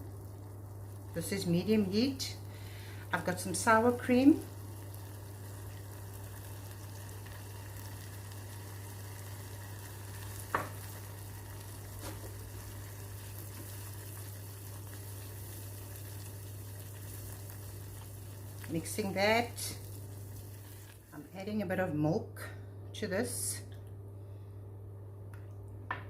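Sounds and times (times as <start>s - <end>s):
butter sizzling in a saucepan: 0.0s - 21.5s
steady low hum: 0.0s - 26.0s.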